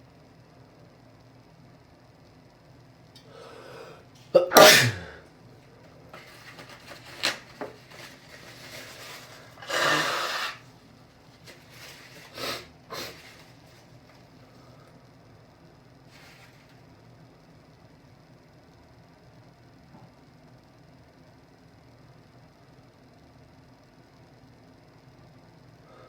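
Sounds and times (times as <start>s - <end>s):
person drawing in breath: 3.2s - 4.0s, 9.4s - 10.6s, 12.2s - 13.5s
person sniffing: 3.2s - 5.2s, 9.4s - 10.6s, 12.0s - 13.5s
person sneezing: 3.3s - 5.2s, 9.6s - 10.6s, 12.3s - 13.4s.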